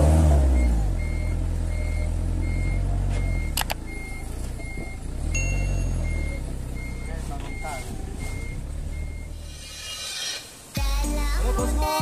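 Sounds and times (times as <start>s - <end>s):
forklift engine rumble: 0.0s - 12.0s
reversing beeper beeps: 0.5s - 10.0s
sharp clicks: 3.5s - 3.8s.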